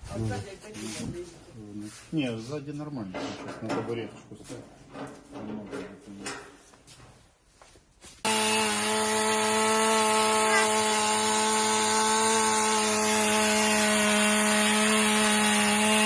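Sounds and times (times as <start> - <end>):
power tool motor whine: 8.2 - 16.0
rough cutting noise: 8.2 - 16.0.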